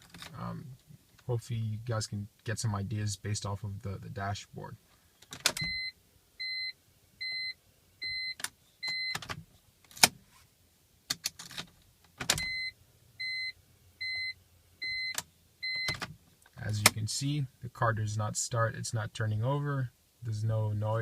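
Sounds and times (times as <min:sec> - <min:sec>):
short two-tone warning beeps: 0:05.7 - 0:09.1, 0:12.4 - 0:16.0.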